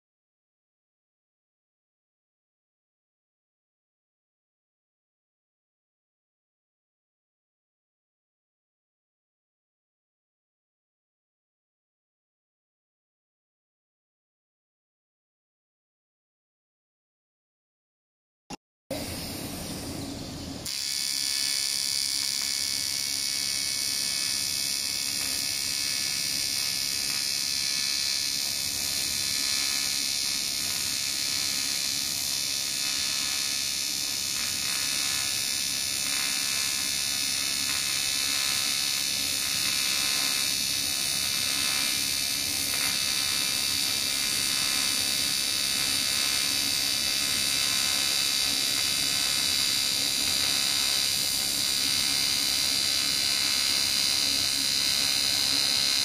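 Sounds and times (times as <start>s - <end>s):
welding arc buzzing hiss: 18.9s - 56.0s.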